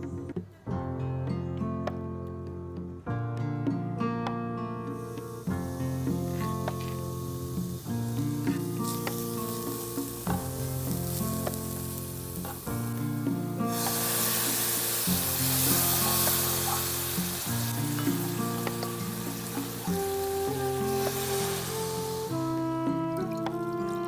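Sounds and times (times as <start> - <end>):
background music: 0.0 - 24.0
food sizzling in hot oil: 4.9 - 24.0.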